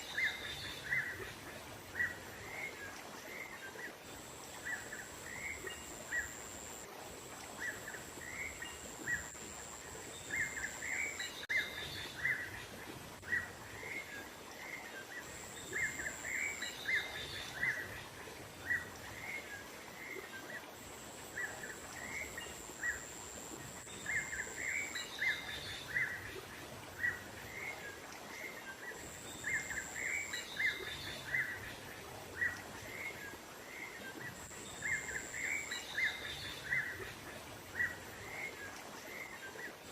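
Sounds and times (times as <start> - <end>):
outdoor background hiss: 0.0 - 39.9.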